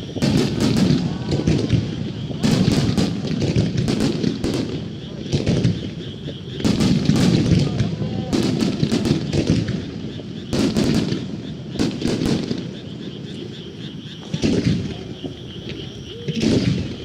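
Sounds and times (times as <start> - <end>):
fireworks bursting with sharp bangs: 0.0 - 17.0.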